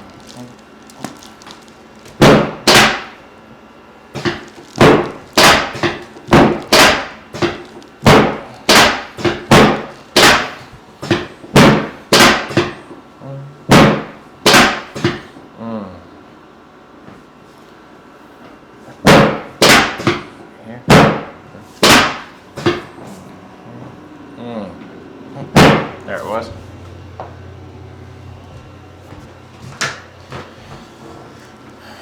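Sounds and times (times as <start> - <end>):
loud sharp knocks ringing: 2.2 - 3.2, 4.2 - 12.8, 13.7 - 15.2, 19.0 - 20.3, 20.9 - 22.9, 25.5 - 26.1.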